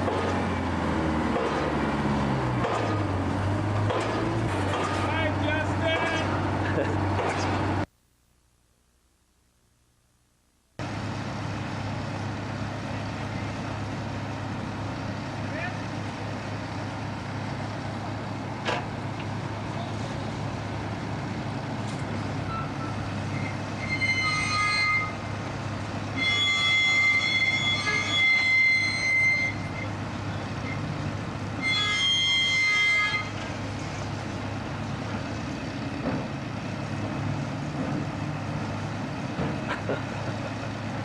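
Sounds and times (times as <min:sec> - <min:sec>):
heavy machine engine idling: 0:10.8 - 0:23.9, 0:24.9 - 0:41.0
high-pitched horn blasts: 0:26.1 - 0:29.9, 0:31.6 - 0:33.4.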